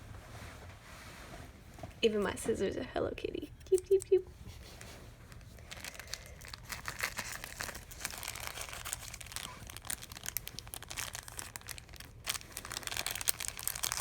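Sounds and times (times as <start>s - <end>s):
plastic packaging crinkling: 4.8s - 14.0s.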